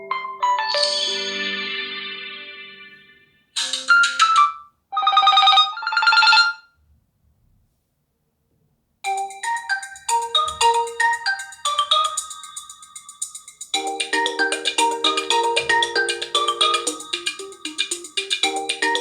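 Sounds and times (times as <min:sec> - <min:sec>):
quick bright ringtone melody: 0:00.0 - 0:03.0, 0:09.1 - 0:19.0
chime of stacked tones: 0:13.8 - 0:19.0.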